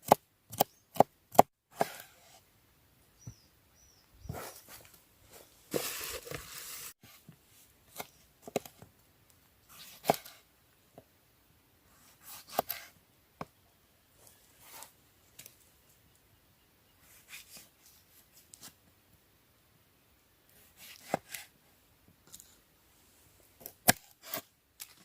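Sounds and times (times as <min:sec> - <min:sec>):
rustling: 0:04.2 - 0:08.9.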